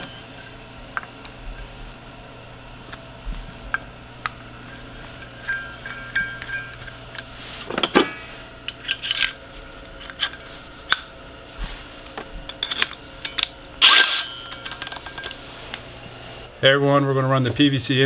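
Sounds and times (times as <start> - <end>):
steady low hum: 0.0 - 18.0
metallic clinks and clatters: 5.1 - 7.2, 14.5 - 15.4.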